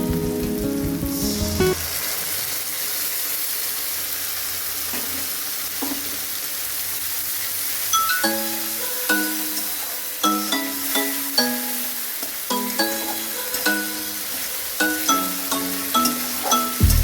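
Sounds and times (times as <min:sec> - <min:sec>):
background music: 0:00.0 - 0:02.1, 0:08.1 - 0:17.0
food sizzling in hot oil: 0:00.5 - 0:16.9.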